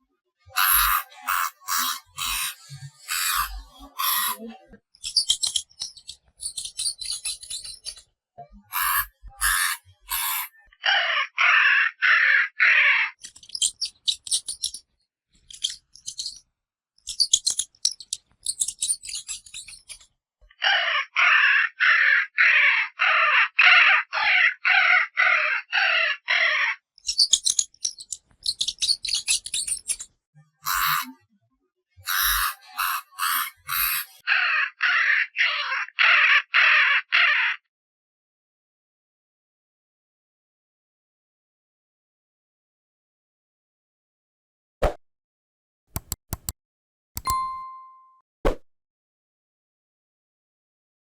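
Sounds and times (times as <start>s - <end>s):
hamster squeaking: 0.5s - 8.0s, 8.6s - 10.5s, 13.2s - 16.4s, 17.0s - 20.1s, 27.0s - 31.2s, 32.0s - 34.2s.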